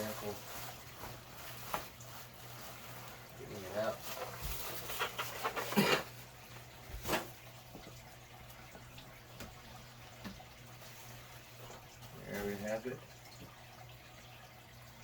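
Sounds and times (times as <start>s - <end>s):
foam and plastic rustling: 0.0s - 7.6s.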